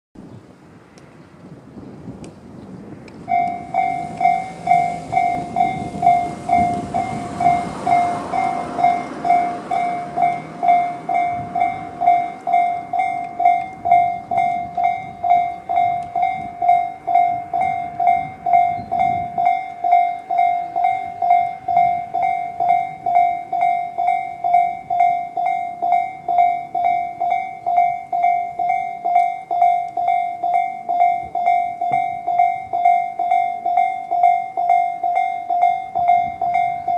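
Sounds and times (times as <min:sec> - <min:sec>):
broad rushing noise: 0:00.4 - 0:29.0
level-crossing warning bell: 0:03.2 - 0:36.9.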